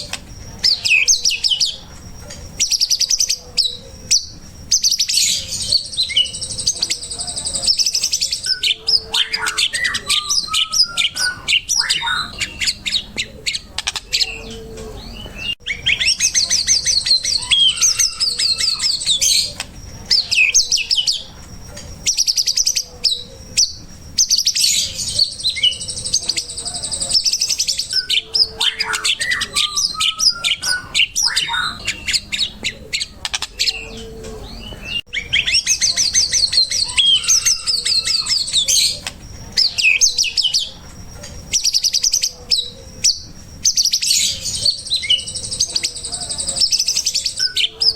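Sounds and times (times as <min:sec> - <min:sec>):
songbird singing trills and whistles: 0:00.0 - 0:47.9.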